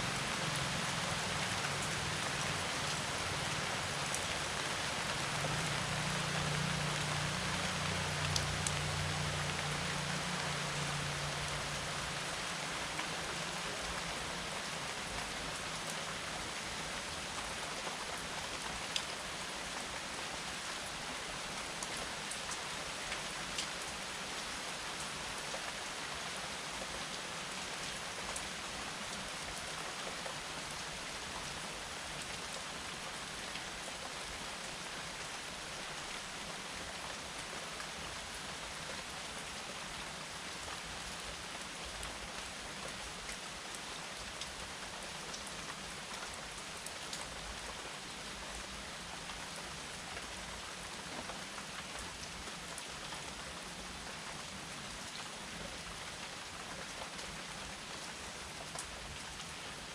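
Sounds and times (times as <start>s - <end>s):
rain falling: 0.0s - 59.9s
raindrop ticks: 8.1s - 9.7s.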